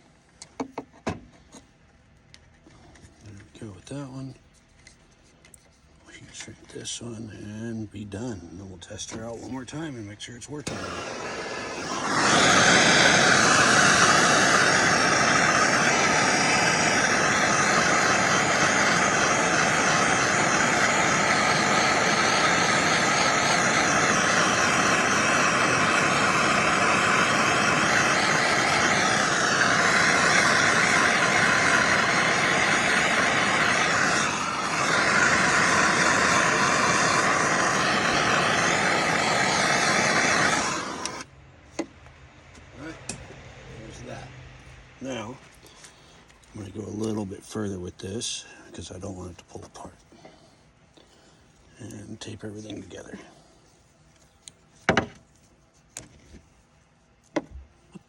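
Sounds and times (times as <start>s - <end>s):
heat gun blowing: 9.2s - 41.3s.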